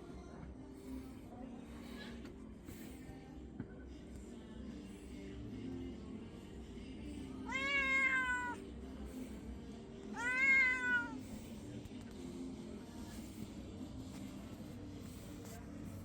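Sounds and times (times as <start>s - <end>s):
cat meowing: 7.4s - 8.6s, 10.1s - 11.2s.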